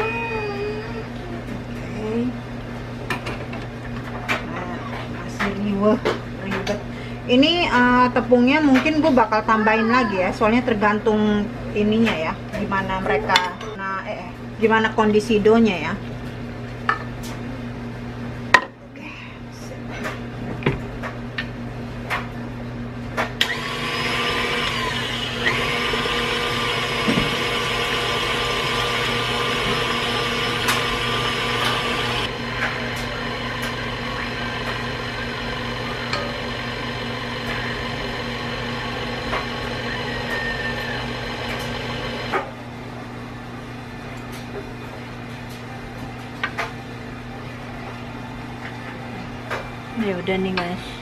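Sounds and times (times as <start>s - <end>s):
electric mixer motor whining: 23.4s - 42.4s.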